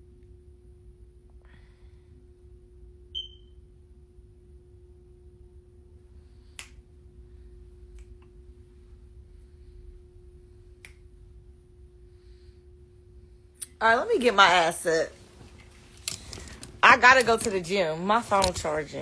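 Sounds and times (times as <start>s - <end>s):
steady low hum: 13.3s - 19.0s
sharp clicks: 13.8s - 19.0s.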